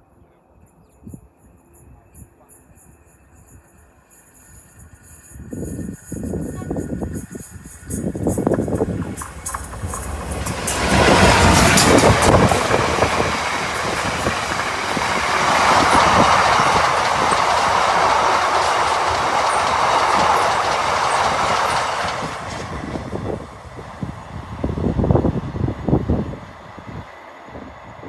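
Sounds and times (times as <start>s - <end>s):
train passing: 0.1s - 28.0s
train wheels clattering on rails: 2.4s - 27.4s.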